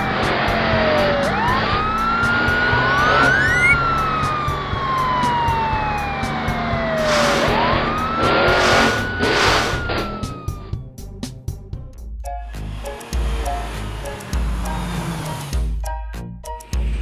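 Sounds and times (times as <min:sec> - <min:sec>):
siren wailing: 0:00.0 - 0:10.8
background music: 0:00.0 - 0:17.0.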